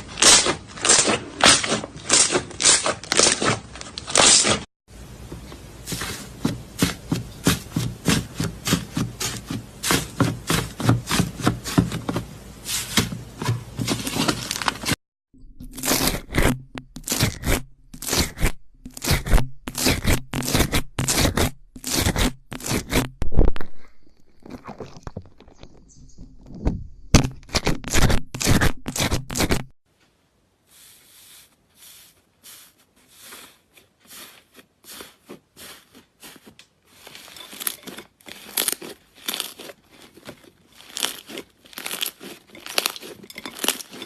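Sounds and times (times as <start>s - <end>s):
slime crackling and popping: 37.0s - 44.0s.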